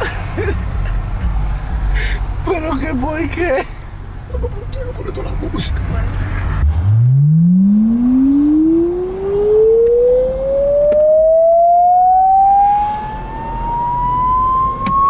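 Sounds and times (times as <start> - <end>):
electronic tone sweeping upward: 6.6 - 15.0.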